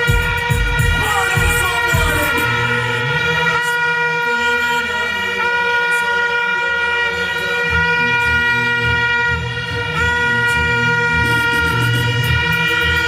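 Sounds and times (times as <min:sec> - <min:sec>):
music with heavy bass beat: 0:00.0 - 0:04.2, 0:07.7 - 0:13.0
hand-held horn long blast: 0:00.0 - 0:13.0.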